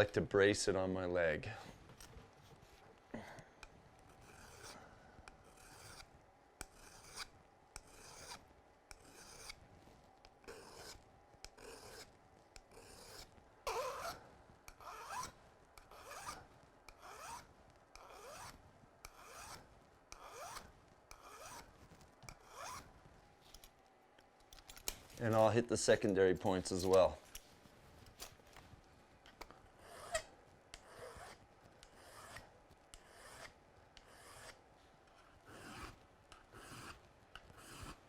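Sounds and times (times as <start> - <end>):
file rasping on steel: 4.1 - 9.6, 10.4 - 21.7, 22.3 - 22.9, 29.8 - 38.0.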